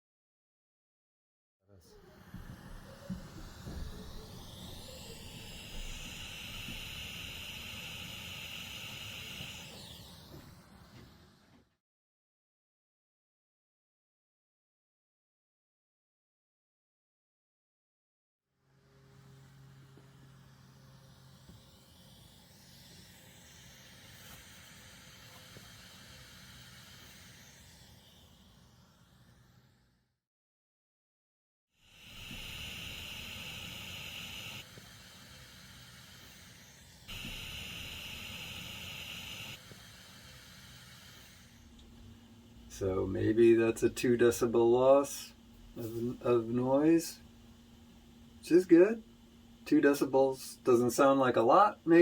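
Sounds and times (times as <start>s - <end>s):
preamp hiss: 1.9s - 11.6s, 19.2s - 29.7s, 31.8s - 52.0s.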